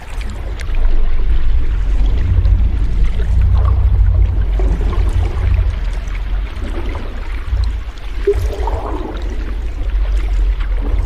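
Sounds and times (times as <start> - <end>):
sea waves washing: 1.6 - 11.0.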